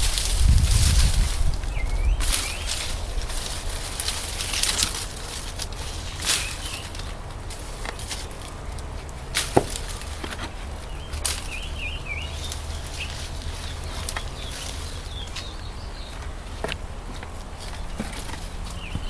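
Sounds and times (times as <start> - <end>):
low steady rumble: 0.0 - 19.0
sharp wooden knocks and cracks: 1.5 - 11.7.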